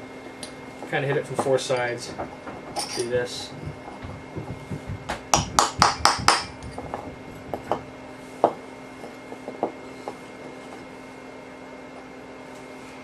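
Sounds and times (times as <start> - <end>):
hammer striking steel punch: 5.3 - 6.7.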